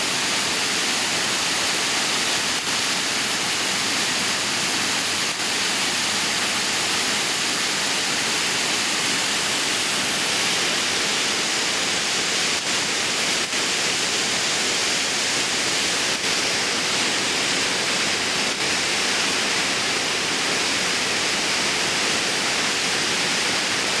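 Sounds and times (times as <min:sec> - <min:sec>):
waterfall rushing: 0:00.0 - 0:24.0.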